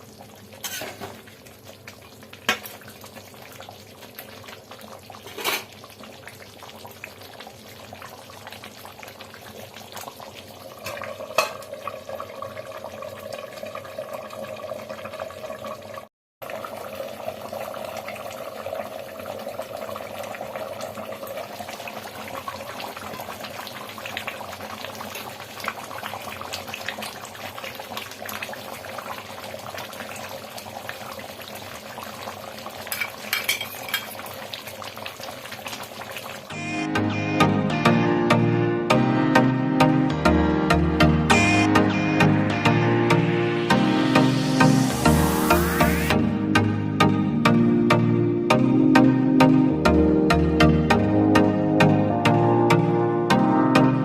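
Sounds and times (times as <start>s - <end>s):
curry simmering and bubbling: 0.0s - 36.5s
spoon clinking against pan: 32.9s - 34.2s.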